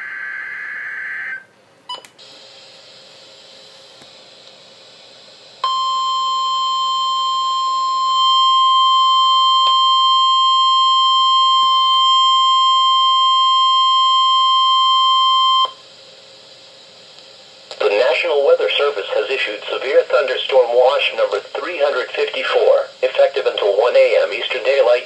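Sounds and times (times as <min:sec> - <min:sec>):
steady warning alarm tone: 0:05.6 - 0:15.8.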